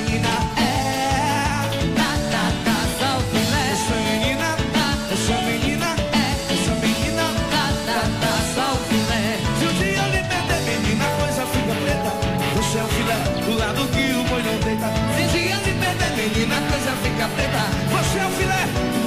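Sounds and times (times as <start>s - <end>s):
live band dance music: 0.0s - 19.0s.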